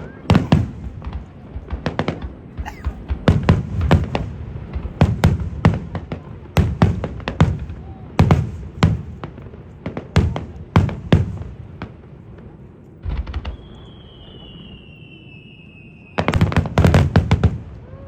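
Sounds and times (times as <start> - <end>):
fireworks bangs: 0.0 - 18.0
high falling whistle: 13.4 - 16.4.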